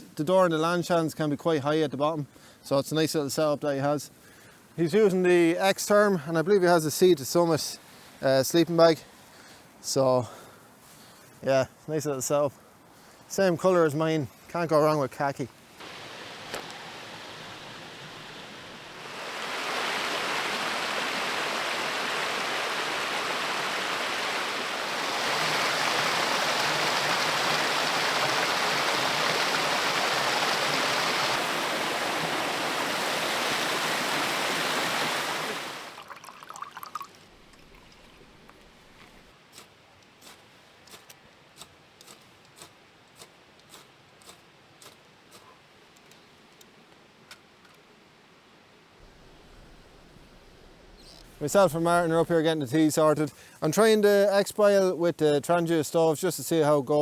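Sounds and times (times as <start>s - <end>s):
rushing river water: 15.7s - 39.2s.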